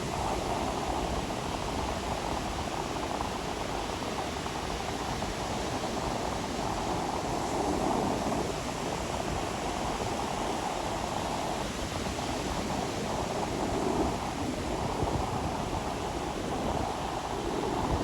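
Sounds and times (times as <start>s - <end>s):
ocean waves washing onto beach: 0.0s - 18.0s.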